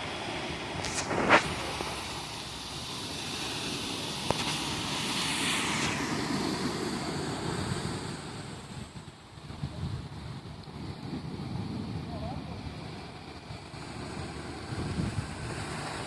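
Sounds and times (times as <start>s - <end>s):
ocean surf on beach: 0.0s - 16.0s.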